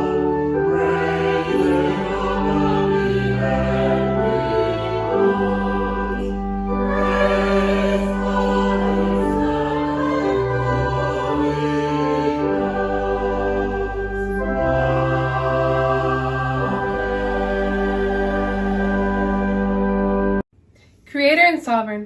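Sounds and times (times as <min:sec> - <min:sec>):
slow sacred choral music: 0:00.0 - 0:20.4.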